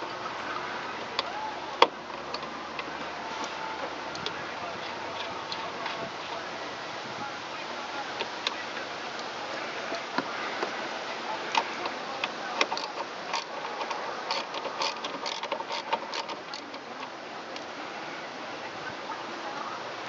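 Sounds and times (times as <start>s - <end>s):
steady hiss: 0.0s - 20.0s.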